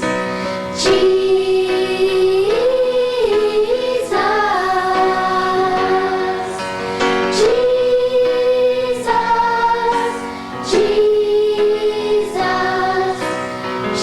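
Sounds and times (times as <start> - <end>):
choir singing slow song: 0.0 - 14.0
musical accompaniment: 0.0 - 14.0.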